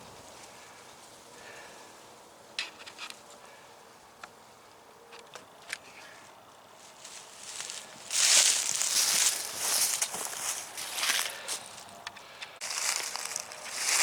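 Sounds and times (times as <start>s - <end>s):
rustling and crunching: 6.8s - 12.0s, 12.6s - 14.0s.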